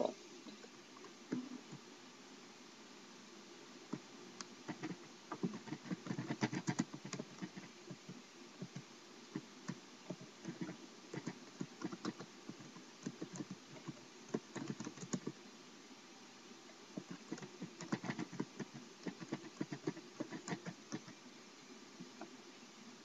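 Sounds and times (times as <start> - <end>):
typing on computer keyboard: 4.7 - 8.8, 9.7 - 15.4, 17.0 - 21.1.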